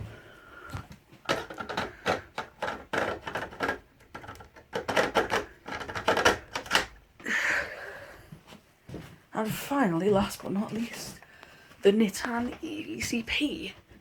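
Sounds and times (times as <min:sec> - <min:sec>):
plastic parts clicking and rattling: 0:00.7 - 0:07.1.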